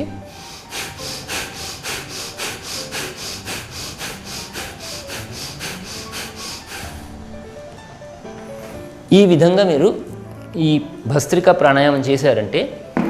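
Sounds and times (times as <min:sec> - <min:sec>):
forceful breaths through nose: 0:00.2 - 0:07.3.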